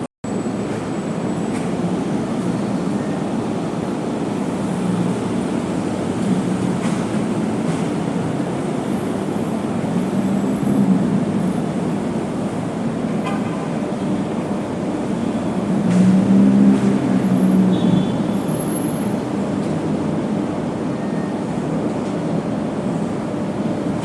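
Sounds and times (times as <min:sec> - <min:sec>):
traffic engines running: 0:00.3 - 0:24.0
car horn toot: 0:13.2 - 0:13.8, 0:17.7 - 0:18.8
loud engine passing close: 0:14.7 - 0:19.6.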